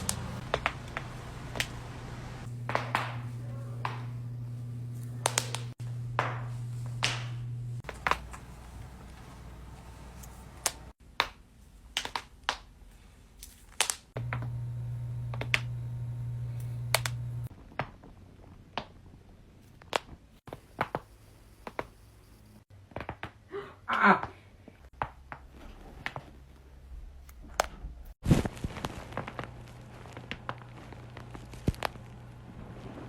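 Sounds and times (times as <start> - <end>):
steady low hum: 0.0 - 11.0, 14.2 - 17.5.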